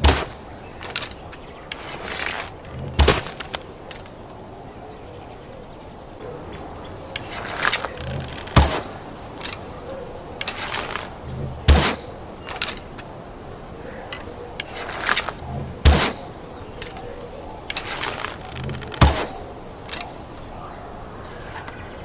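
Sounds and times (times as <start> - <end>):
arrow thunking into target: 0.0 - 1.1, 1.7 - 3.6, 7.2 - 9.6, 10.4 - 12.8, 14.6 - 16.3, 17.7 - 20.1
small ticks and creaks: 0.0 - 5.8, 7.0 - 20.6
arrow swishing in flight: 7.2 - 9.0, 11.7 - 12.2, 14.6 - 16.3, 17.7 - 20.1.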